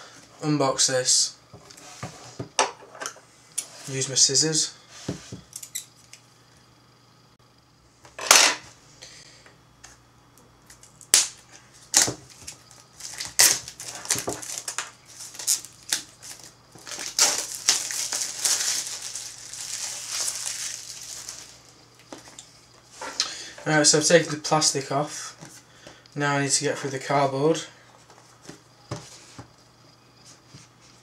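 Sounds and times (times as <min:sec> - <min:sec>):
shrink-wrap crinkling: 0:10.8 - 0:22.5.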